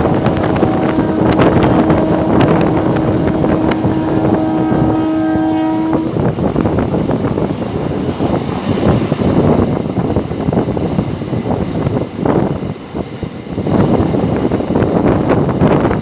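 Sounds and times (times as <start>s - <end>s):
locomotive horn blast: 0.0s - 6.9s
train rumble and rail clatter: 0.0s - 16.0s.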